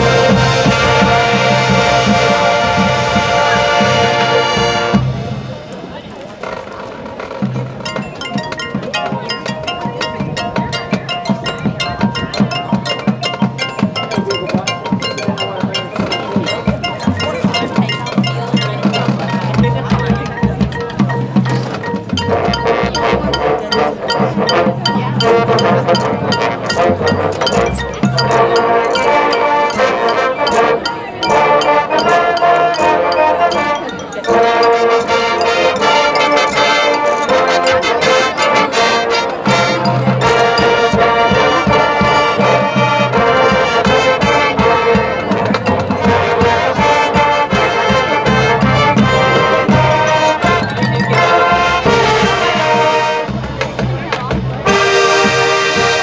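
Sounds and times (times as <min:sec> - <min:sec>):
brass sustaining chords: 0:00.0 - 0:05.6, 0:21.2 - 0:45.5
drumline: 0:00.0 - 0:56.0.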